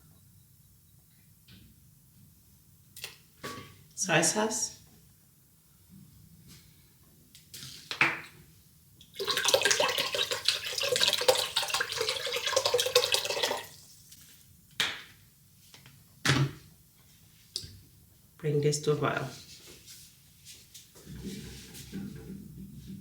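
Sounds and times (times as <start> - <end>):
liquid pouring into pot: 9.0 - 13.8.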